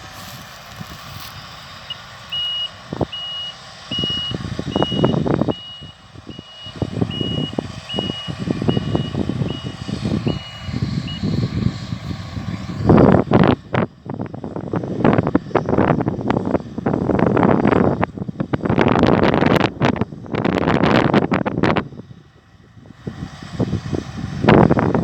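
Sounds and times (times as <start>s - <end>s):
low machine rumble: 0.0s - 25.0s
wind gusts on microphone: 0.0s - 25.0s
reversing alarm beeping: 1.8s - 11.8s.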